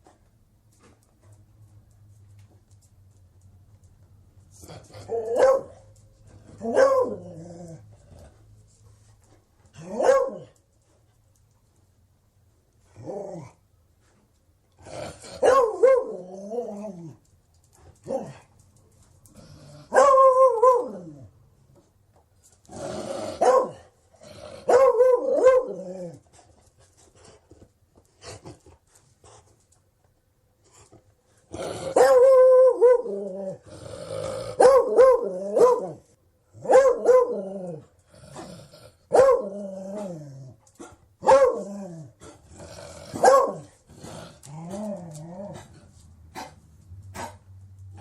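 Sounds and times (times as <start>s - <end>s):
dog barking and baying: 5.0s - 5.9s, 6.6s - 7.4s, 9.8s - 10.6s, 15.4s - 16.4s, 19.9s - 21.2s, 23.4s - 23.8s, 24.6s - 26.1s, 31.9s - 33.6s, 34.6s - 36.0s, 36.6s - 37.8s, 39.1s - 40.1s, 41.2s - 41.7s, 43.1s - 43.8s.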